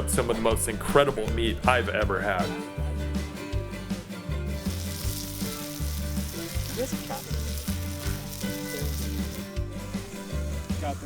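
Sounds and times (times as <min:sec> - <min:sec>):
background music bass line: 0:00.0 - 0:11.0
meat sizzling in a pan: 0:04.6 - 0:11.0.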